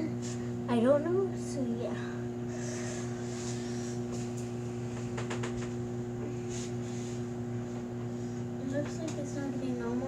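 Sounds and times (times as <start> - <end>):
microwave oven humming: 0.0 - 10.0.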